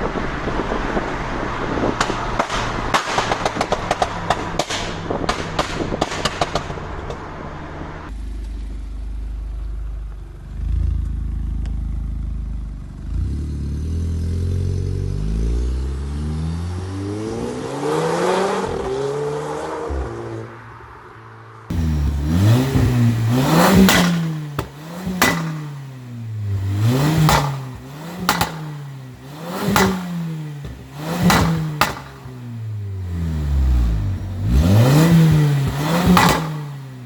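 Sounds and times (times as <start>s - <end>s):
exhaust pops and crackles: 0.0s - 12.8s, 21.7s - 37.0s
car engine accelerating: 0.0s - 37.0s.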